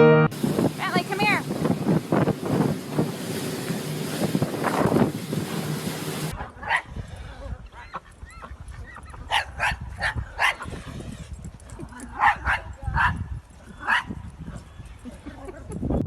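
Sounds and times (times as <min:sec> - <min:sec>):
steady rushing noise: 0:00.3 - 0:06.4.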